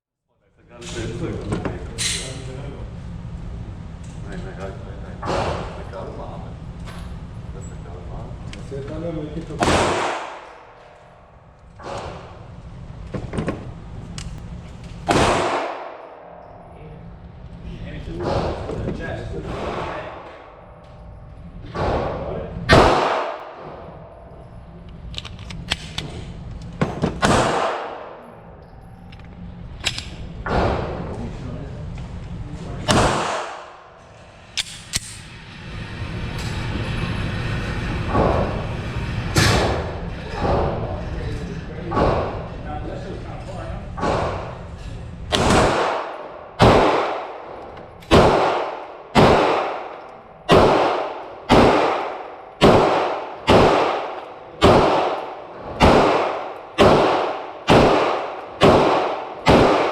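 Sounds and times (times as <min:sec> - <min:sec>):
pistol shots: 0:09.6 - 0:10.7, 0:15.0 - 0:16.4, 0:22.7 - 0:23.6, 0:27.2 - 0:28.2, 0:32.9 - 0:33.8, 0:45.3 - 0:47.5, 0:48.1 - 0:59.9.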